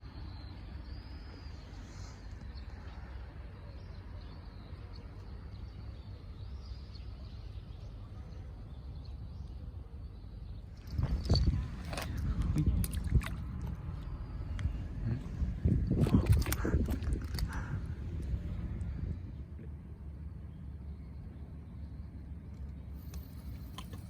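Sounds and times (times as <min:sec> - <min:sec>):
faint bird chirps: 0:00.0 - 0:11.4
heavy low rumble: 0:00.4 - 0:24.0.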